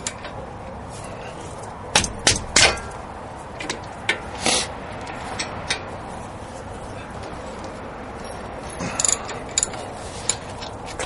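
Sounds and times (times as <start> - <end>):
hand tools clinking on metal: 8.2 - 10.6.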